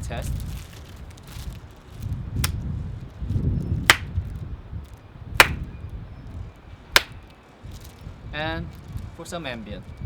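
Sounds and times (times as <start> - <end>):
wind rumbling on microphone: 0.0 - 10.0
hand claps: 5.4 - 5.6, 7.0 - 7.2.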